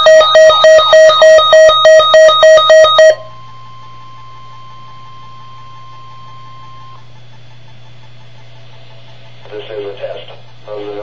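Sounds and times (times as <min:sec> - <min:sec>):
two-pitch emergency alert tone: 0:00.0 - 0:07.0.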